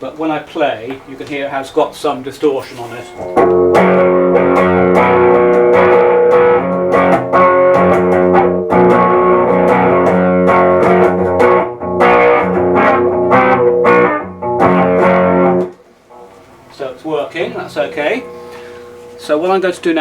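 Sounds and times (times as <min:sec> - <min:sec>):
distorted electric guitar chords: 0:03.1 - 0:20.0.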